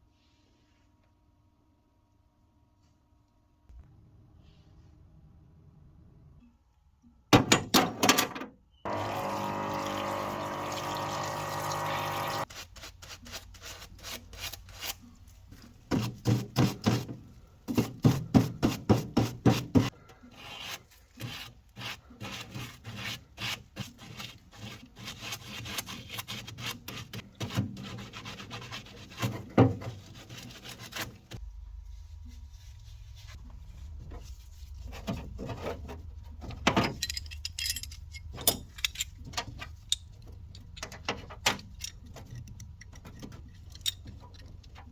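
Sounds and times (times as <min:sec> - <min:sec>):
hand rubbing and scraping parts: 0:06.3 - 0:44.9
small motor hum: 0:08.9 - 0:12.5.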